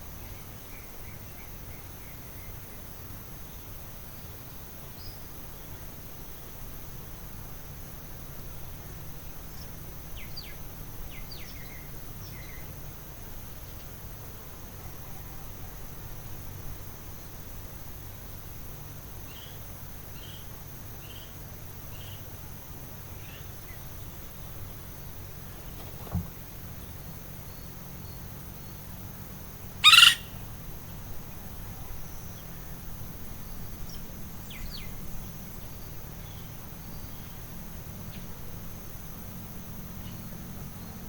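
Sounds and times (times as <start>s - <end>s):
high insect hiss: 0.0s - 41.0s
forest birds calling: 9.4s - 13.9s, 19.2s - 22.4s, 23.1s - 32.9s, 33.5s - 38.4s
soft thump: 25.7s - 26.4s.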